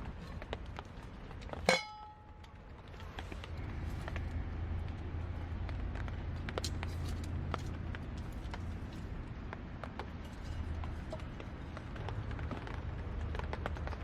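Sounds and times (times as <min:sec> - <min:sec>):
campfire crackling: 0:00.0 - 0:14.0
metal clink: 0:01.7 - 0:02.5.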